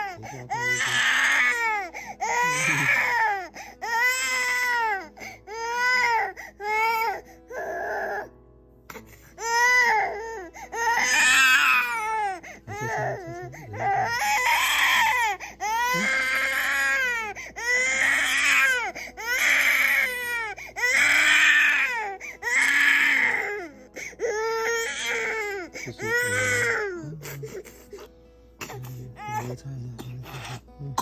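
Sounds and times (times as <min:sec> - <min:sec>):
baby crying: 0:00.0 - 0:08.3, 0:08.9 - 0:29.6.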